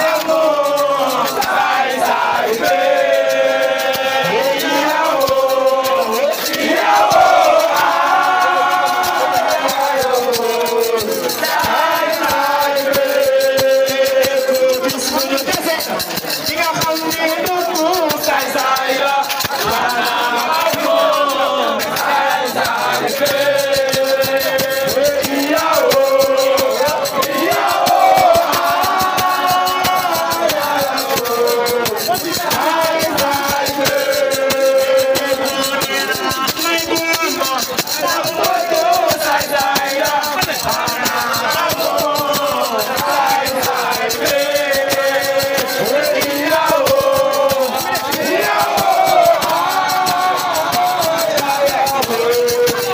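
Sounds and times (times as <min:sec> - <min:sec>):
group singing a chant: 0:00.0 - 0:52.9
rattling percussion beat: 0:00.0 - 0:52.9.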